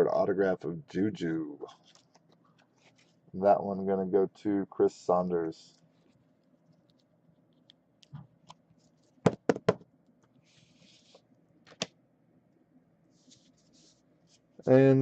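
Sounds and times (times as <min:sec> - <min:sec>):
cards sliding rustle: 0:01.7 - 0:03.2, 0:10.4 - 0:11.9, 0:13.1 - 0:14.5.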